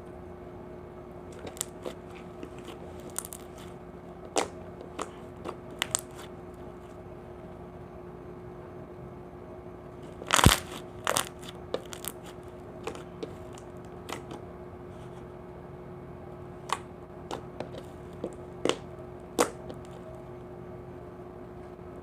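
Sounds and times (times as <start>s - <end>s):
faint steady hum: 0.0s - 22.0s
slime clicking and popping: 3.1s - 3.5s, 5.8s - 6.2s, 10.2s - 13.0s, 19.4s - 19.9s.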